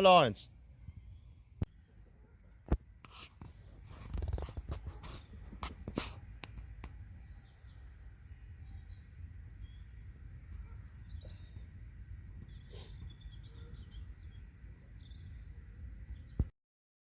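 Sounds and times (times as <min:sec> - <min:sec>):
faint bird chirps: 0:00.7 - 0:02.6, 0:03.6 - 0:05.5, 0:06.9 - 0:16.5.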